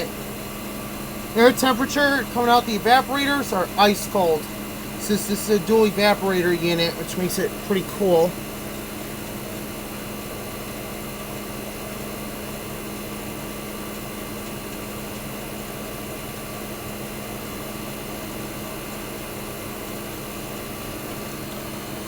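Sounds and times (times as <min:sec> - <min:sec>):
fan-blown air rushing: 0:00.0 - 0:16.6
air conditioner compressor hum: 0:00.0 - 0:22.0.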